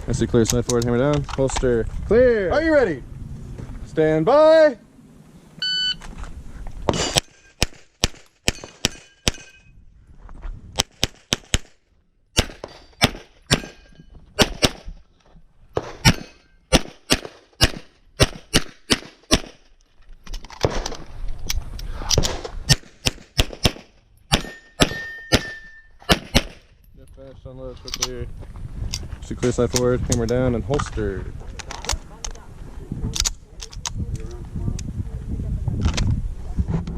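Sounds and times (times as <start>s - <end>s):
pistol shots: 6.9s - 9.6s, 12.4s - 13.8s, 14.4s - 14.9s, 15.8s - 19.6s, 22.2s - 26.6s.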